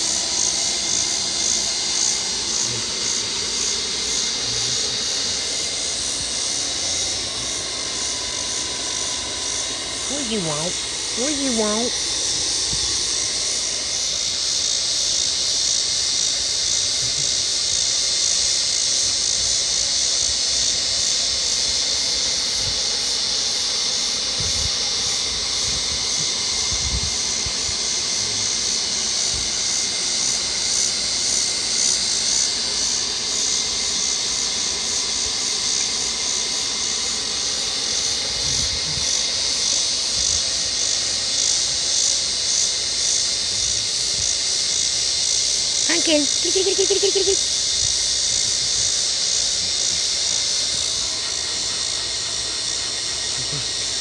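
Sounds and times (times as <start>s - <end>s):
cicadas buzzing: 0.0s - 54.0s.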